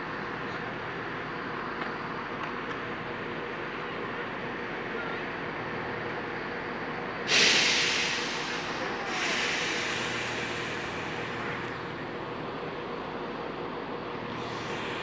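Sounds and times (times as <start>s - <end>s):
train air brakes hissing: 7.3s - 11.9s, 14.3s - 15.0s.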